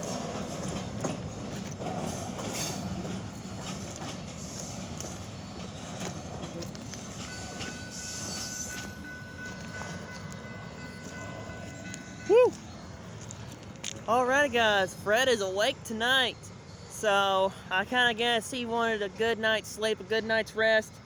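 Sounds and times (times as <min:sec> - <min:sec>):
train wheels clicking on rails: 0:00.0 - 0:15.7.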